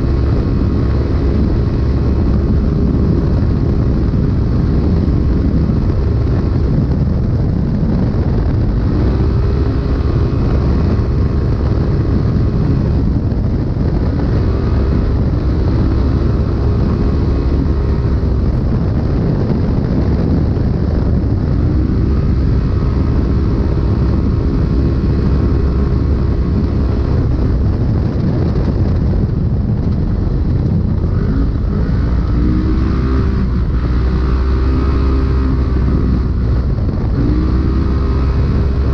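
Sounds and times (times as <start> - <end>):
heavy low rumble: 0.0 - 38.9
engine revving from inside cab: 31.0 - 38.9.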